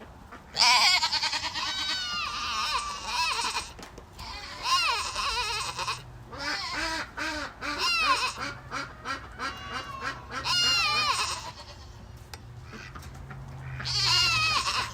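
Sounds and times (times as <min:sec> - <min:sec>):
goats bleating: 0:00.5 - 0:07.0, 0:07.6 - 0:12.1, 0:13.6 - 0:14.9
ducks quacking: 0:04.3 - 0:12.0, 0:12.6 - 0:14.9.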